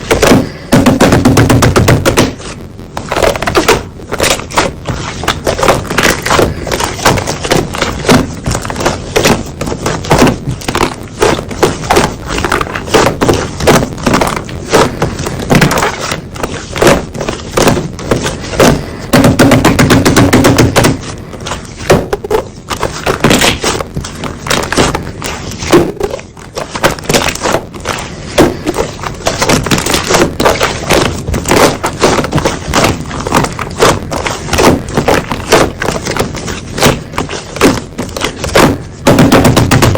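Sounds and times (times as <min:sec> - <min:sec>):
heavy slime squelch: 0:00.0 - 0:39.9.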